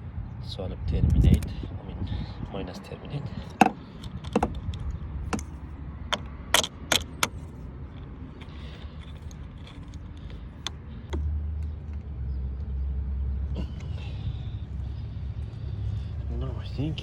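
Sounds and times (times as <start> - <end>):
wrench clinking on battery terminal: 6.1 - 7.4.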